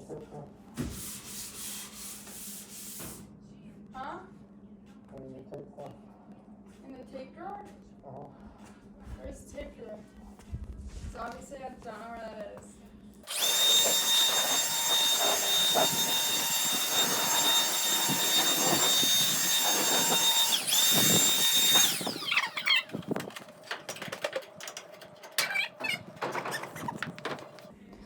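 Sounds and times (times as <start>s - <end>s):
power tool motor whine: 13.3s - 27.7s
scraping and tapping: 19.9s - 27.8s.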